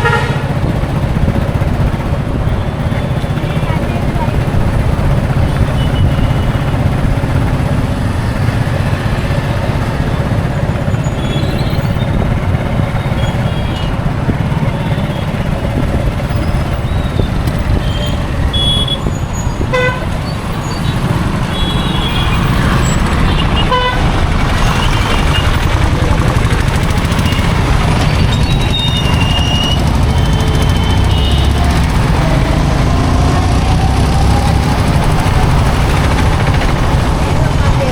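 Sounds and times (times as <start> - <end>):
car horn honks: 0.0 - 0.5, 17.8 - 20.4, 21.4 - 25.5, 28.7 - 31.8
road traffic rumbling: 0.0 - 37.9.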